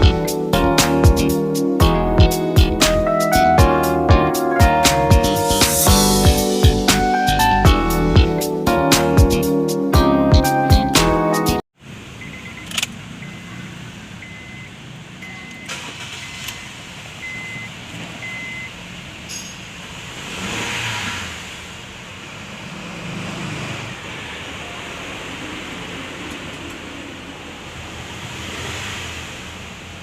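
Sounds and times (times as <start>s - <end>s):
background noise: 11.8s - 30.0s
short electronic beeps: 12.2s - 13.6s, 14.2s - 18.7s.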